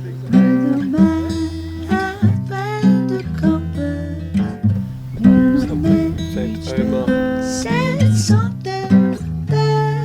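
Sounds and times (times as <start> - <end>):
acoustic guitar: 0.0 - 10.0
bass line: 4.6 - 8.4.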